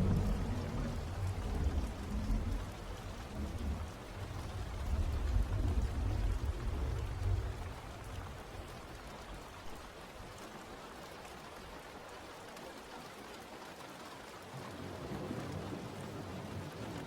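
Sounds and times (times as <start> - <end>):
deep low rumble: 0.0 - 8.4
steady rain falling: 0.0 - 17.0.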